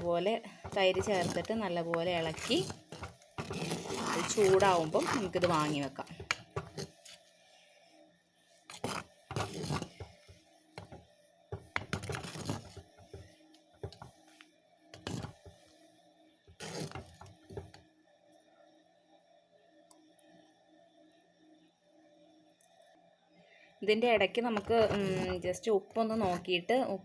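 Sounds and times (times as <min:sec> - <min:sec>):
faint background music: 0:00.0 - 0:27.0
spoon scraping a pot: 0:00.6 - 0:07.2, 0:08.7 - 0:10.2, 0:11.8 - 0:12.8, 0:15.0 - 0:15.4, 0:16.6 - 0:17.6, 0:24.5 - 0:26.5.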